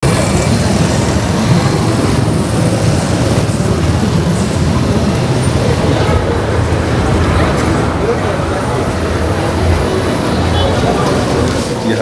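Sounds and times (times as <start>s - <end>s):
street traffic noise: 0.0s - 12.0s.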